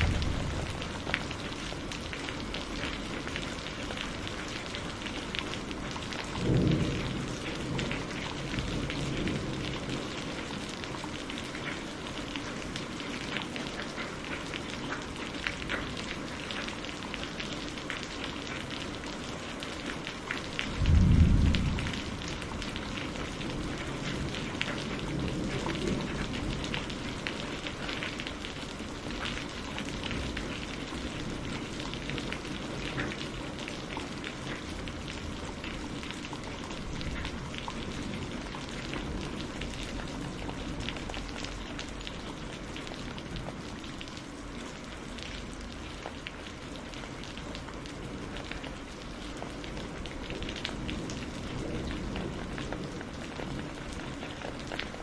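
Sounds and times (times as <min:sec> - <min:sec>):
steady rain patter: 0:00.0 - 0:55.0
low even rumble: 0:20.8 - 0:22.6.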